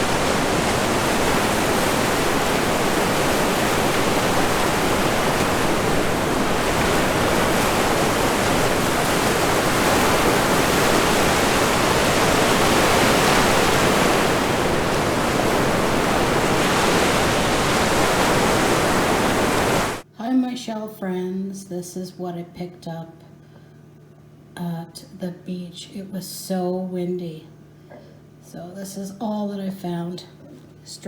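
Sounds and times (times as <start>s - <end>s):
ocean surf breaking: 0.0s - 20.0s
wind blowing over microphone: 0.0s - 20.0s.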